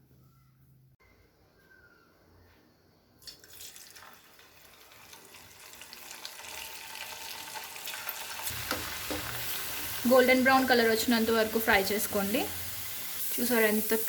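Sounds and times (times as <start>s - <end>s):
potatoes sizzling in hot oil: 3.6s - 14.0s.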